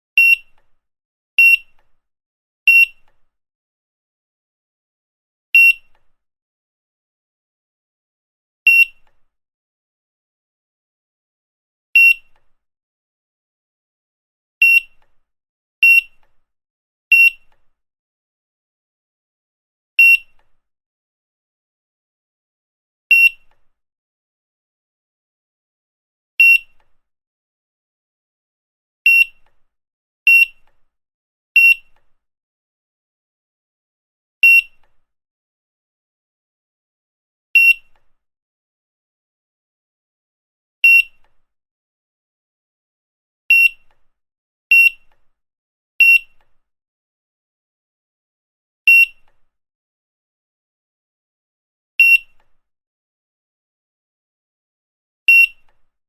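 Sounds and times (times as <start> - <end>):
barcode scanner beep: 0.2 - 0.6, 1.4 - 1.8, 2.7 - 3.0, 5.6 - 6.0, 8.7 - 9.0, 12.0 - 12.3, 14.6 - 15.0, 15.8 - 16.2, 17.1 - 17.5, 29.1 - 29.4, 31.6 - 31.9, 34.4 - 34.8, 40.8 - 41.2, 43.5 - 43.8, 46.0 - 46.4, 48.9 - 49.2, 55.3 - 55.6.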